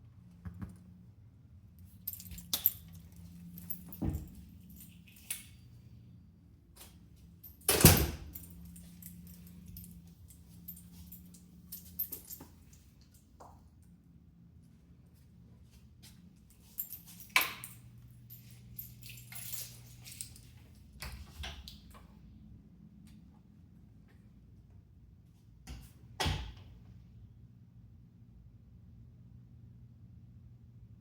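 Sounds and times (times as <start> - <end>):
keys jangling: 1.8 - 5.7, 7.4 - 13.2, 16.5 - 21.0.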